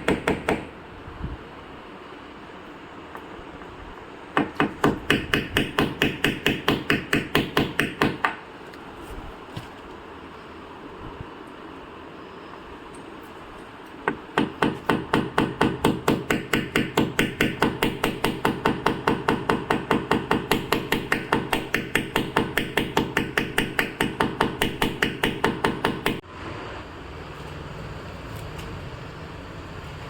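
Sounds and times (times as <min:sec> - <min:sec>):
rapid hammer taps: 0:14.1 - 0:26.2.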